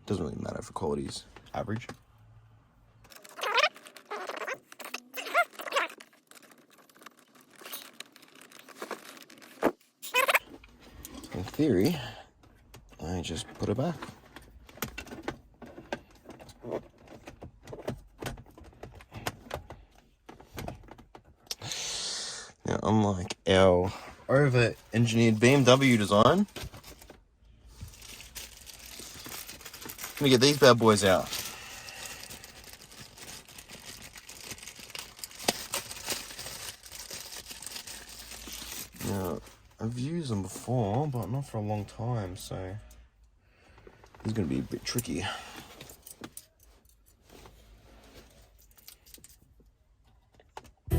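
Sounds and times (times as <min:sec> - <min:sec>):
plastic packaging crinkling: 0:03.1 - 0:10.5, 0:27.9 - 0:39.4.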